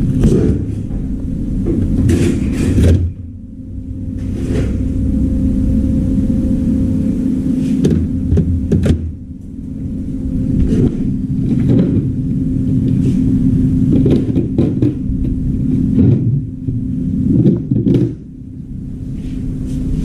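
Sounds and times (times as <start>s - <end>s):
low machine hum: 0.0s - 20.0s
knocks and clatters: 13.9s - 18.3s.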